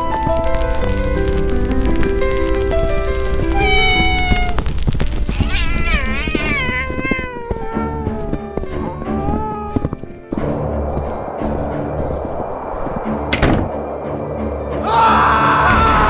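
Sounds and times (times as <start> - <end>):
background music: 0.0 - 6.6, 7.3 - 16.0
kitten meowing: 3.4 - 10.0.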